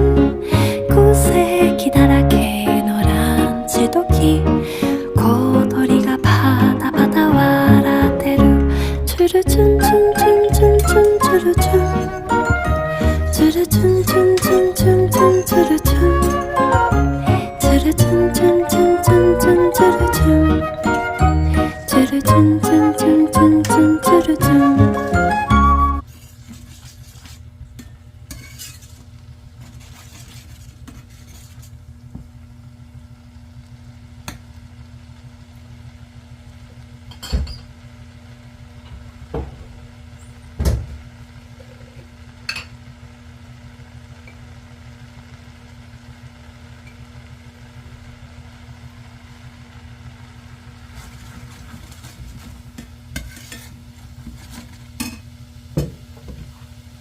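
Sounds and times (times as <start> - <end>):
low hum: 0.0 - 26.0.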